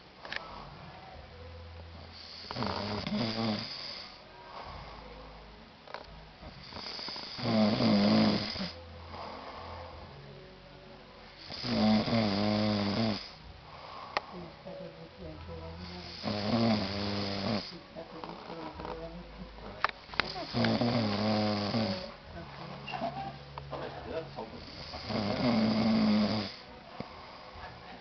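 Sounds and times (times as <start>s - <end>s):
man snoring: 2.1s - 5.0s, 6.6s - 10.2s, 11.4s - 14.1s, 15.8s - 17.8s, 20.4s - 22.2s, 24.6s - 27.6s.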